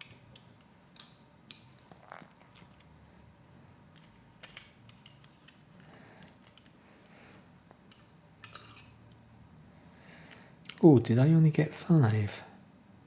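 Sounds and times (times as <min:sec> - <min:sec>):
plastic pieces clicking: 0:04.0 - 0:06.8, 0:07.9 - 0:08.9.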